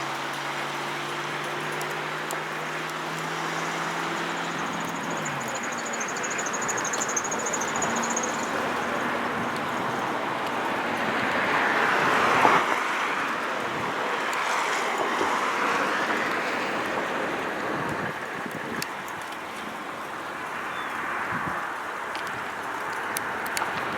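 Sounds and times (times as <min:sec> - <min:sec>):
train passing: 0:02.6 - 0:18.3.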